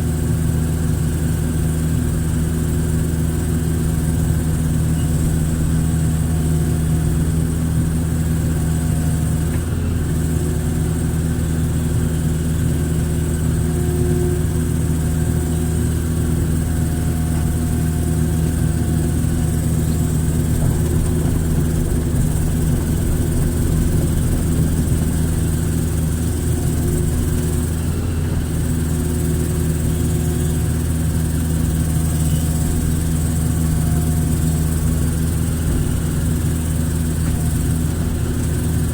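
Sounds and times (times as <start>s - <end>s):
excavator diesel engine running: 0.0s - 38.9s
faint high whine: 12.4s - 38.8s.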